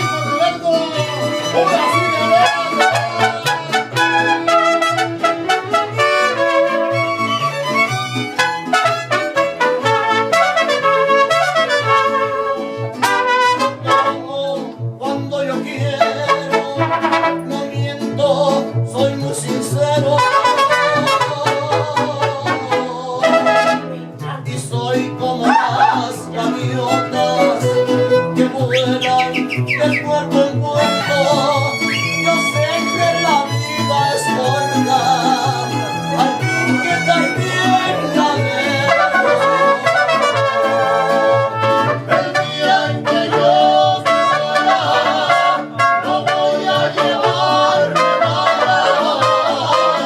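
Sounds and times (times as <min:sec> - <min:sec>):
bass line: 0:00.0 - 0:50.0
strummed guitar rhythm: 0:00.0 - 0:50.0
violins playing melody: 0:30.9 - 0:39.9.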